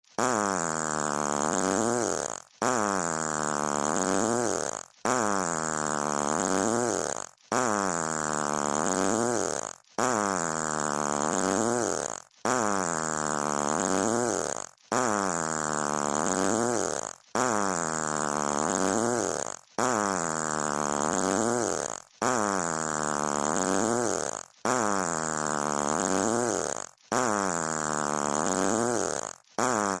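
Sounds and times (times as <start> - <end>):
buzzy fart sound effect: 0.1 - 30.0.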